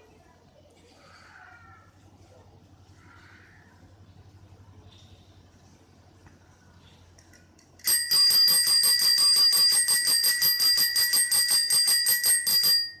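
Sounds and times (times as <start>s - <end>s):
bicycle bell ringing: 7.8s - 13.0s.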